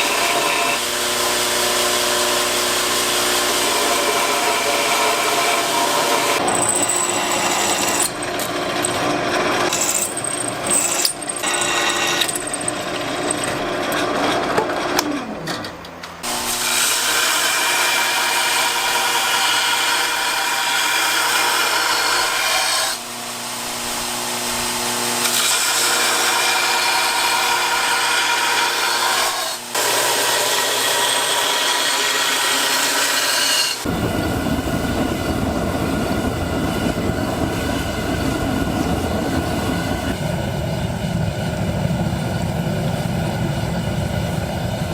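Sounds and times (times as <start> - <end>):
power tool grinding: 0.0 - 34.2
deep heavy rumble: 33.9 - 44.9.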